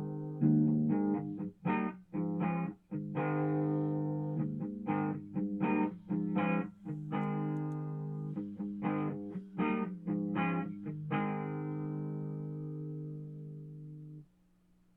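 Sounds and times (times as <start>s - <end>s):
ringing guitar chords: 0.0s - 14.2s.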